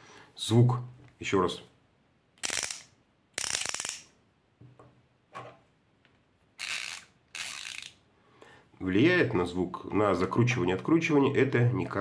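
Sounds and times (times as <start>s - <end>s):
screwdriver ratchet clicking: 2.4s - 4.1s.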